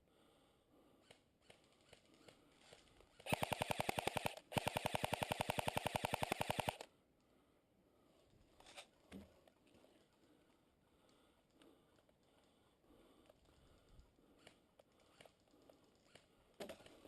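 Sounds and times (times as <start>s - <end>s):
airsoft gun firing full auto: 3.2s - 6.9s.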